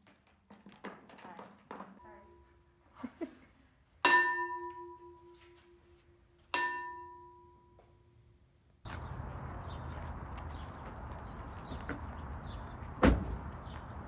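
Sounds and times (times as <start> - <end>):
bell-like object ringing: 4.0 - 7.8.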